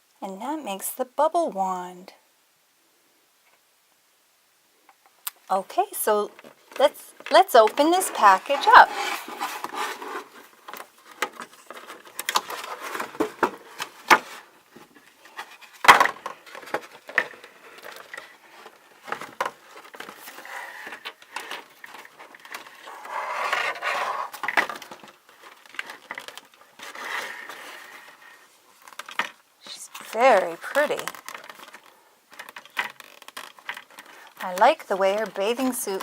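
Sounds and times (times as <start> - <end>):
cardboard and plastic packaging crinkling: 6.0 - 36.0
packaging rustle: 6.3 - 36.0.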